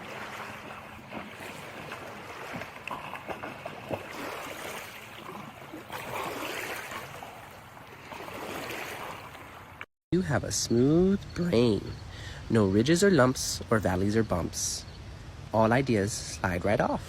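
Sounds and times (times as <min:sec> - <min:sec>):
water splashing and sloshing: 0:00.0 - 0:09.9.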